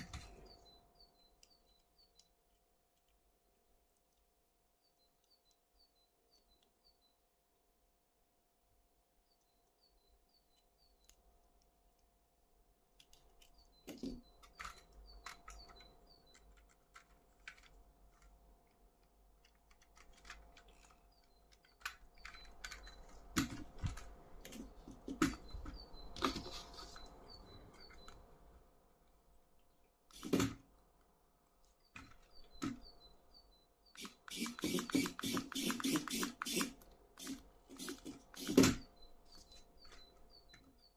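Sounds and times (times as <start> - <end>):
plastic toys clicking and tapping: 12.9 - 28.3, 34.0 - 38.8.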